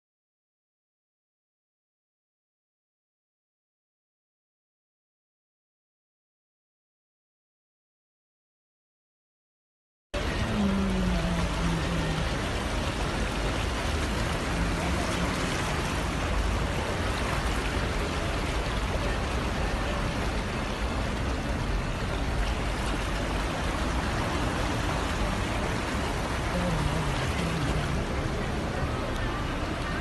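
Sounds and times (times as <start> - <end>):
floodwater rushing: 10.2 - 30.0.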